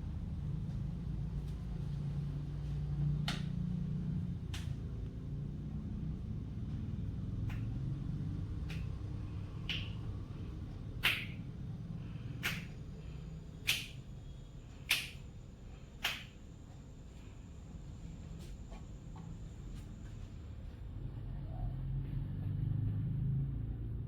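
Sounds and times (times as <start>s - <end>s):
knuckles cracking: 12.4s - 12.8s.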